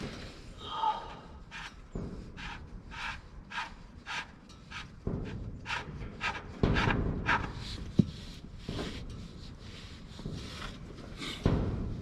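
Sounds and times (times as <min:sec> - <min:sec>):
man breathing heavily: 0:00.5 - 0:04.4.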